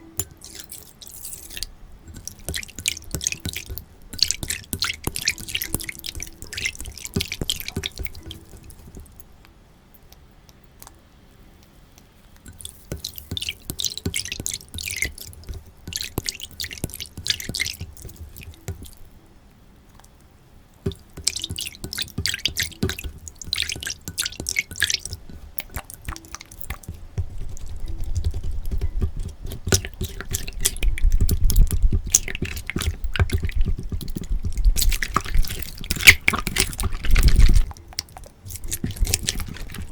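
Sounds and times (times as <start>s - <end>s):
slime squeezed by hand: 20.9s - 39.9s.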